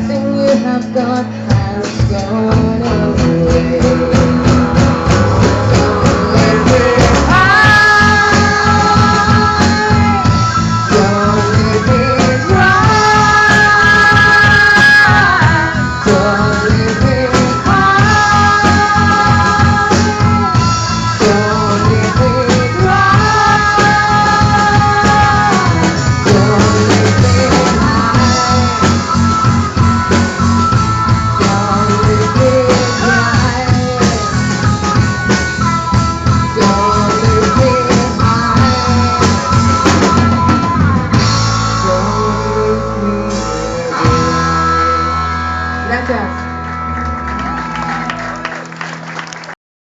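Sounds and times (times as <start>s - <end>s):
rock music: 0.0s - 49.5s.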